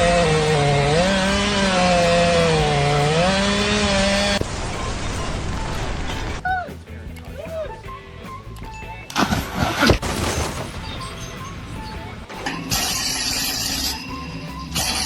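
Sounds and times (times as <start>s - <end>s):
power tool motor running: 0.0s - 4.4s.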